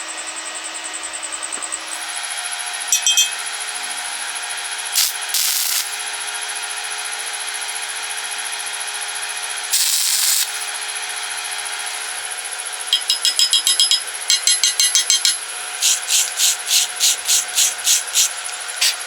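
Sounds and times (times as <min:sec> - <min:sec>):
welding arc sizzling and crackling: 0:04.9 - 0:06.2, 0:09.7 - 0:10.8, 0:15.8 - 0:19.0
bursts of hiss: 0:05.0 - 0:06.0, 0:09.7 - 0:10.7, 0:15.8 - 0:19.0.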